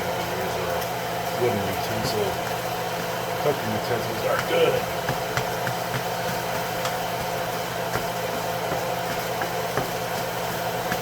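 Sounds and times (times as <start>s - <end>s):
eggs sizzling in skillet: 0.1s - 11.0s.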